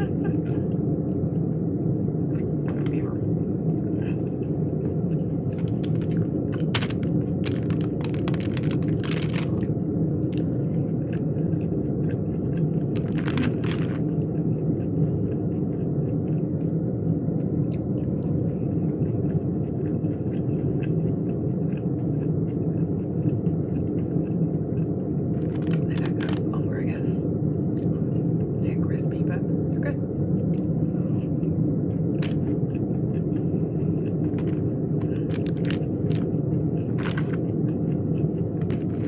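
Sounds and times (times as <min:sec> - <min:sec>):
steady low rumble: 0:00.0 - 0:39.0
person chewing and biting food: 0:02.3 - 0:16.7, 0:17.7 - 0:26.5, 0:30.4 - 0:39.0
wet crackly mouth clicks: 0:04.8 - 0:09.7, 0:17.6 - 0:26.5, 0:30.5 - 0:30.7, 0:31.5 - 0:39.0.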